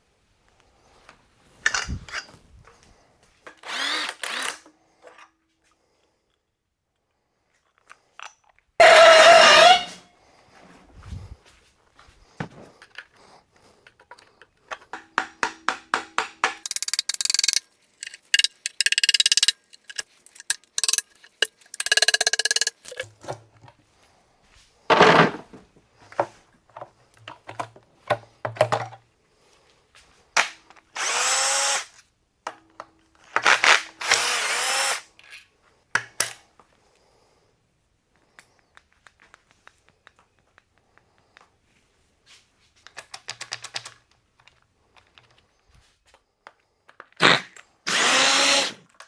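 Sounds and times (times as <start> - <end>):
power tool bursts: 8.8 - 10.0, 16.6 - 23.0, 31.0 - 31.9, 33.4 - 35.1, 47.2 - 48.9
metal clinks and knocks: 14.0 - 23.4
rapid clicking: 16.6 - 23.0.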